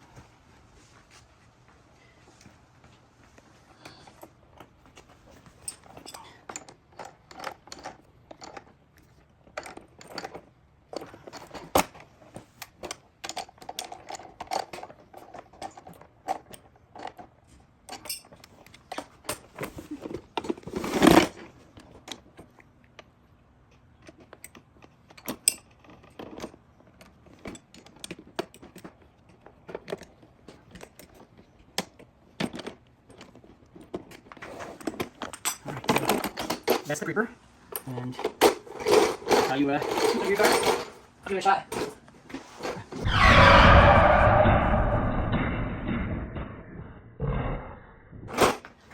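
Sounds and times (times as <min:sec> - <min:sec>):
metal parts and tools clinking: 0:05.6 - 0:08.7, 0:17.9 - 0:18.4.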